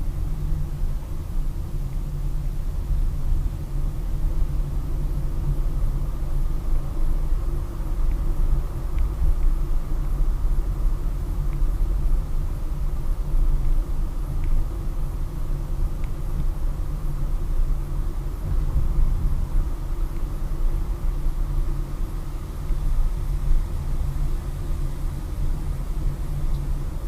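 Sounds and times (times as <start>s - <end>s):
car interior low rumble: 0.0s - 27.0s
faint light ticks: 1.9s - 2.6s, 7.8s - 9.8s, 11.3s - 12.2s, 13.6s - 15.2s, 15.8s - 16.7s, 20.0s - 20.4s, 22.6s - 23.6s, 26.4s - 26.8s.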